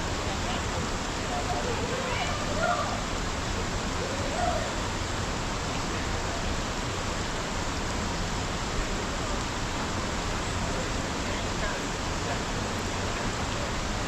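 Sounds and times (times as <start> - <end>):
river rushing: 0.0 - 14.0
faint voice: 0.2 - 4.9.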